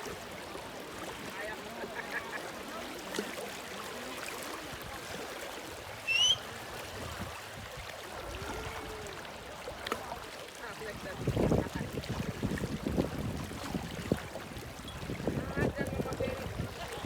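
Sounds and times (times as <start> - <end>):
river water running: 0.0 - 17.0
high rising whistle-like chirp: 6.1 - 6.4.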